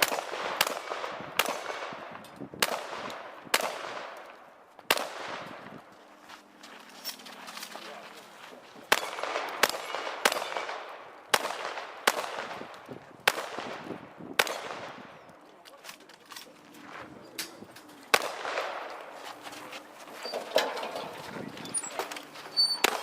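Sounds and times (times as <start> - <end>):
shotgun shots echoing: 0.0 - 5.8, 8.9 - 15.3, 18.1 - 19.2, 22.8 - 23.0.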